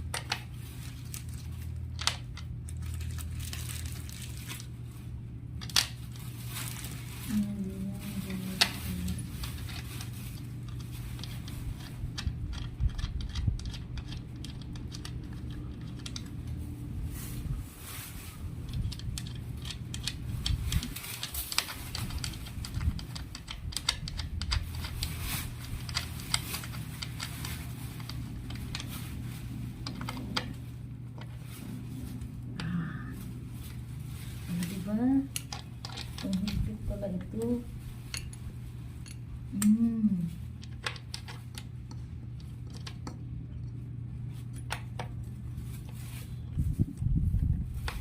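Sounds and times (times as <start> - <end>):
steady low hum: 0.0 - 48.0
furniture parts clicking and rattling: 8.6 - 16.6, 18.7 - 28.9.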